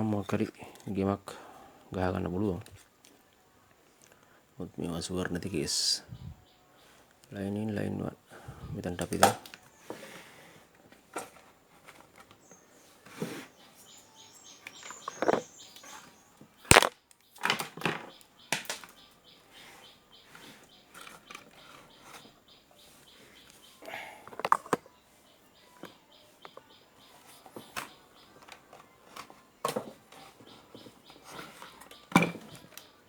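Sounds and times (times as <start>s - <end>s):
hands handling circuit board and cables: 14.9s - 15.4s, 16.7s - 16.9s.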